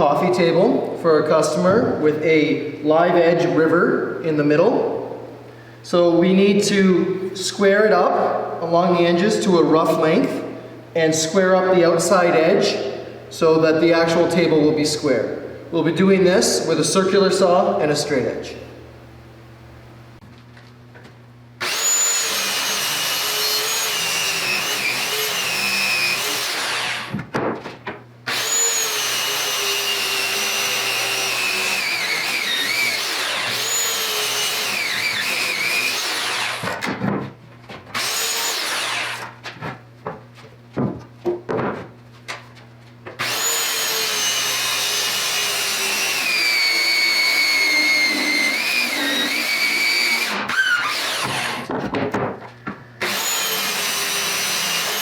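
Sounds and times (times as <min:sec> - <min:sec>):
circular saw cutting wood: 0:21.6 - 0:27.1, 0:28.3 - 0:36.8, 0:38.0 - 0:39.4, 0:43.2 - 0:51.7, 0:53.0 - 0:55.0.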